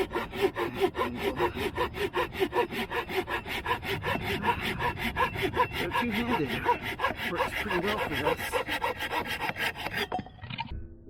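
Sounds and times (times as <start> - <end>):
pull saw cutting wood: 0.0 - 10.5.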